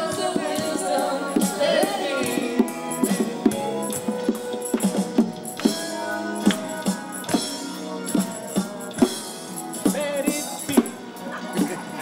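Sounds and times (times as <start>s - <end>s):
music with percussive beat: 0.0s - 12.0s.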